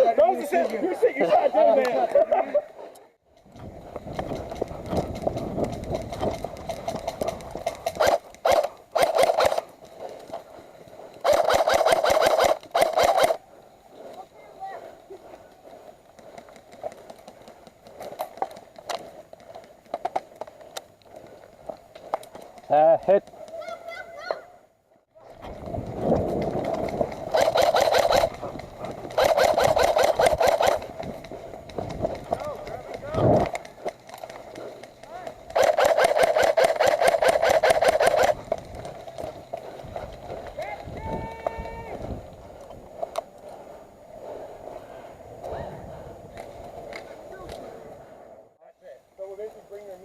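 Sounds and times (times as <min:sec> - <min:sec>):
airsoft guns firing bursts: 0:05.4 - 0:09.7, 0:11.2 - 0:13.4, 0:26.7 - 0:31.1, 0:34.5 - 0:39.6
gearbox whirring: 0:25.4 - 0:34.5.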